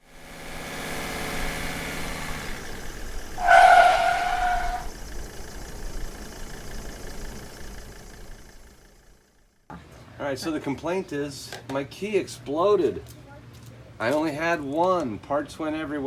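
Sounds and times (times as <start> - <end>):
vehicle engine idling: 0.0 - 10.4
vehicle horn blast: 3.4 - 4.9.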